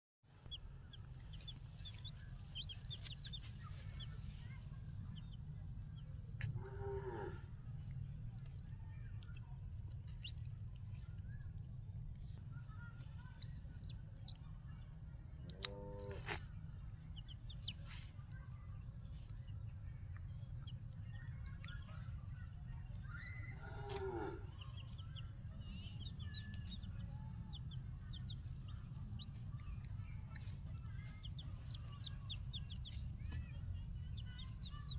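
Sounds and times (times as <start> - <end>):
steady low rumble: 0.3 - 15.6, 16.2 - 34.9.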